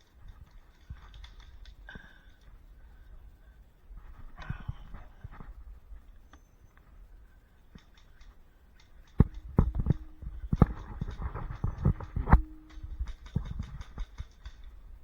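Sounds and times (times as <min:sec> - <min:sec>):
sharp knocks and clicks: 0:07.7 - 0:14.8.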